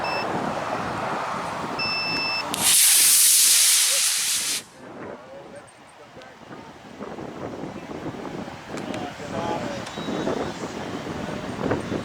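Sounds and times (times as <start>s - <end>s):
rocket motor hiss: 2.5s - 4.7s.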